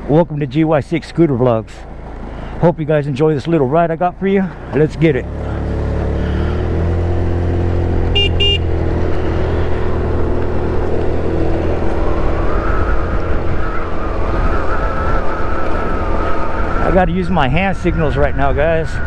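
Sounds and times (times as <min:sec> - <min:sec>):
scooter engine drone: 0:00.0 - 0:19.0
high whine: 0:03.4 - 0:19.0
wind on microphone: 0:06.6 - 0:19.0.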